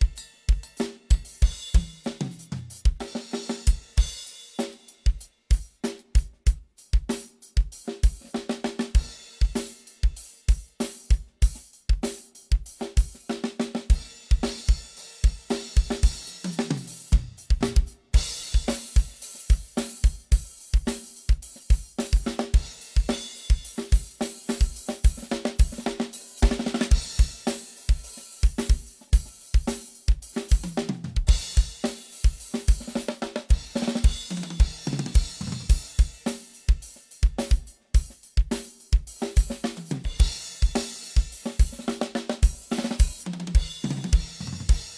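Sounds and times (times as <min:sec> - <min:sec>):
drum kit beat: 0:00.0 - 0:44.9.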